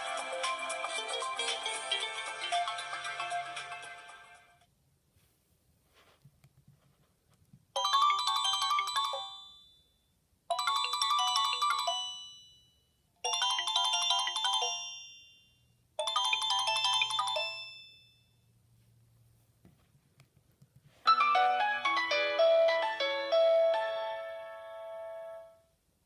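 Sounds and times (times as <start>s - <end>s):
phone ringtone melody: 7.8s - 9.8s, 10.5s - 18.3s, 21.1s - 25.6s.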